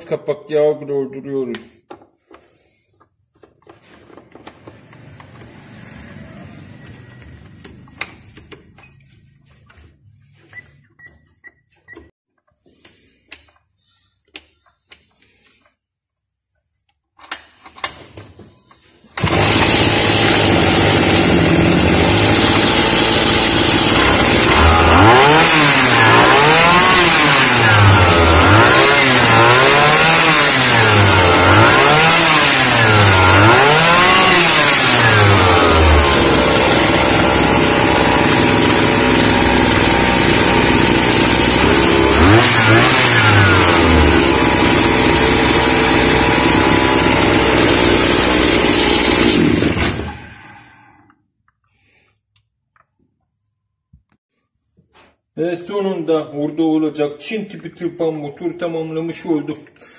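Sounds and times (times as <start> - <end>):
two-stroke engine revving: 4.7 - 8.8, 19.2 - 50.9.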